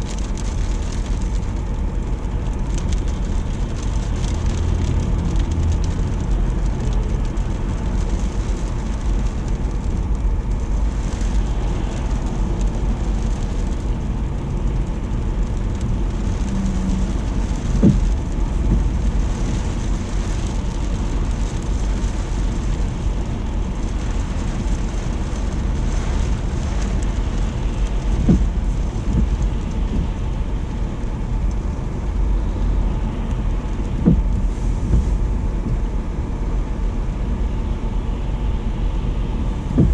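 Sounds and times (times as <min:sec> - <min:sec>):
constant low rumble: 0:00.0 - 0:39.9
heavy rain and sleet falling: 0:00.0 - 0:39.9
low thumps: 0:28.1 - 0:30.2, 0:33.9 - 0:35.8, 0:39.6 - 0:39.9.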